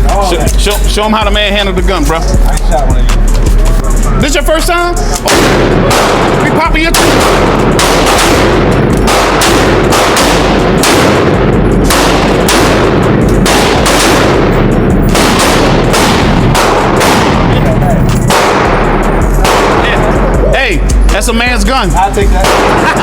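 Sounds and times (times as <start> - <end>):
pistol gunshots echoing: 5.2 - 20.4, 22.3 - 23.0.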